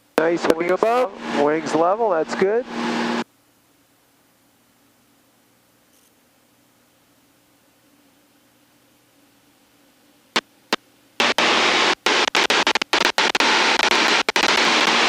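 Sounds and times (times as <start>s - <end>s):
sharp clicks: 12.2s - 15.0s.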